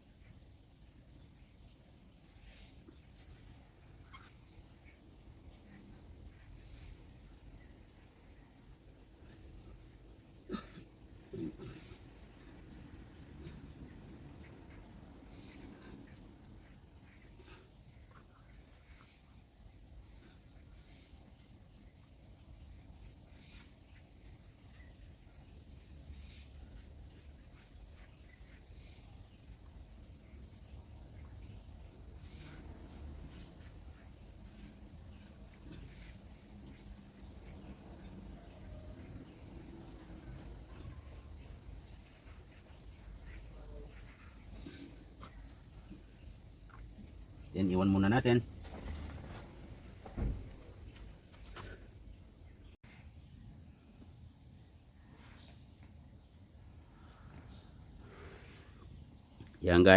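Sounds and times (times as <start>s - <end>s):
crickets chirring: 18.2s - 52.8s.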